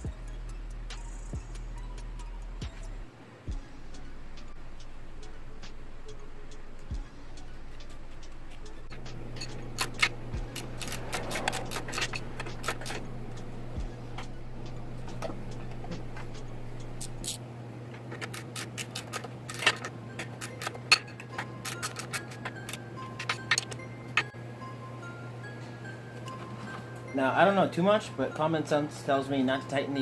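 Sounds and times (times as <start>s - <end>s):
low hum: 1.8s - 18.2s
hand tools and bolts clinking: 7.8s - 14.4s, 15.0s - 24.4s.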